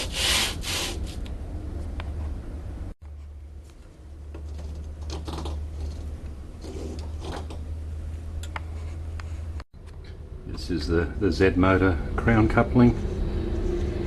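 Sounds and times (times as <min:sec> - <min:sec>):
low hum: 0:01.2 - 0:14.0
printer parts clicking and rattling: 0:04.4 - 0:06.1.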